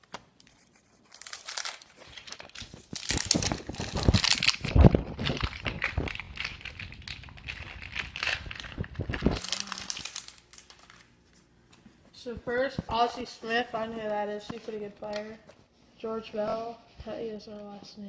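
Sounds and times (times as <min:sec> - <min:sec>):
wrapper tearing and crinkling: 0:00.0 - 0:11.2.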